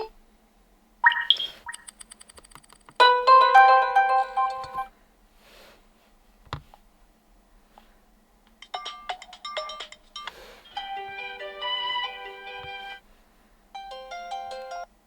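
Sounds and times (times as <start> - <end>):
phone ringtone melody: 3.0 - 4.9
plucked ringtone notes: 3.0 - 4.9.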